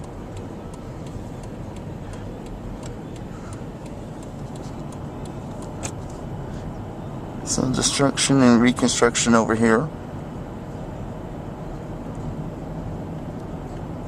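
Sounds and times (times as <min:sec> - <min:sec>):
light even ticking: 0:00.0 - 0:06.0
road and engine noise in car: 0:00.0 - 0:14.0.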